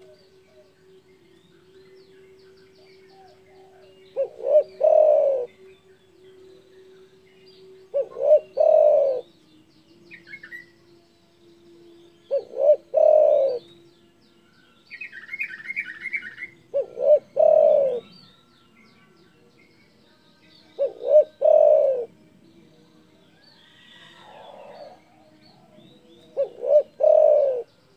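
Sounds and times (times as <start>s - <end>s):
dove cooing: 0.0s - 0.7s, 2.8s - 5.6s, 7.9s - 9.3s, 12.3s - 13.7s, 15.4s - 18.2s, 20.8s - 22.1s, 23.7s - 27.7s.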